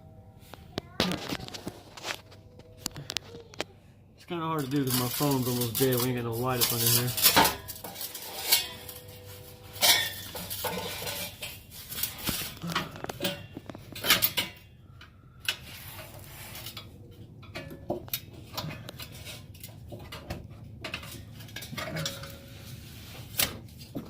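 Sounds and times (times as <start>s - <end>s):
metal pipe clanking: 4.3s - 22.8s.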